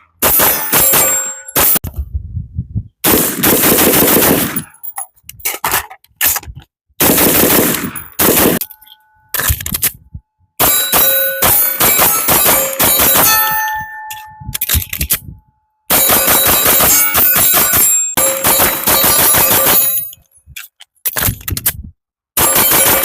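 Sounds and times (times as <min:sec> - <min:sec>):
rapid gunfire: 0:00.2 - 0:01.8, 0:03.0 - 0:04.7, 0:07.0 - 0:08.6, 0:10.6 - 0:13.4, 0:15.9 - 0:20.0, 0:22.4 - 0:23.0
steel targets ringing: 0:00.2 - 0:01.8, 0:10.6 - 0:14.5, 0:15.9 - 0:20.2.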